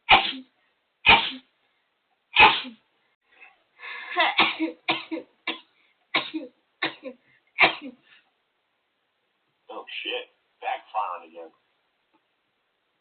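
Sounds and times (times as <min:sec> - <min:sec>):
person sneezing: 0:00.1 - 0:00.5, 0:01.1 - 0:01.5, 0:02.4 - 0:02.8.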